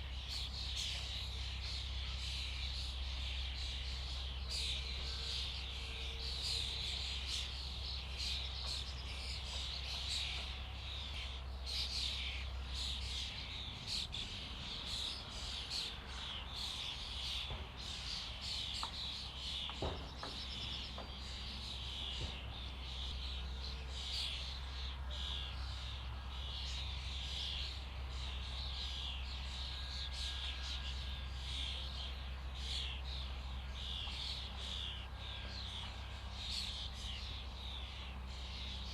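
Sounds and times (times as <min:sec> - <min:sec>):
flock of starlings chattering: 0:00.0 - 0:38.9.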